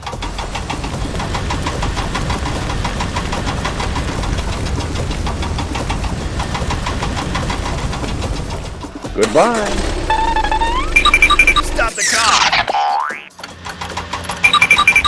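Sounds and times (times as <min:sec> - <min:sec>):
small engine chugging: 0:00.0 - 0:11.9.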